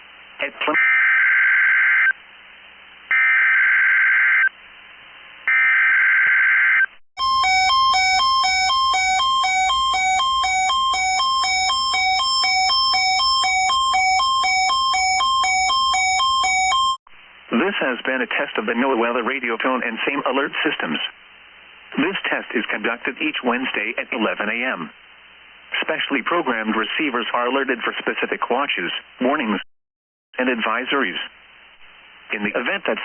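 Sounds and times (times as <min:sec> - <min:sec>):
two-pitch alert tone: 0:07.2 - 0:17.0.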